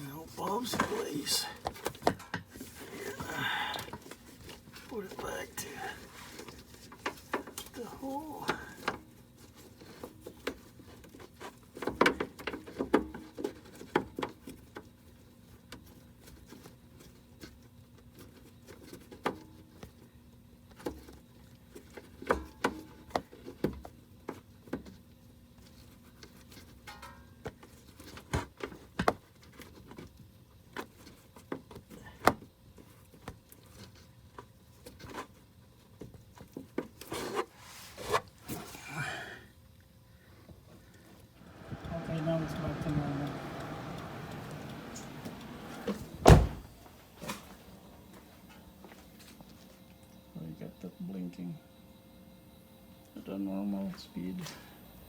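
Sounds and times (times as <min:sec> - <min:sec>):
faint steady hum: 0:00.0 - 0:12.4, 0:30.1 - 0:55.0.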